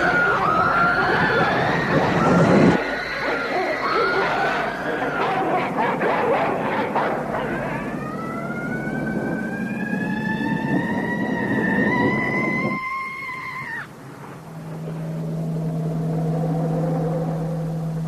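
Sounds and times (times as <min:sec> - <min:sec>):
pitched wailing cry: 0:00.0 - 0:05.6, 0:11.6 - 0:13.9
low steady hum: 0:00.0 - 0:18.0.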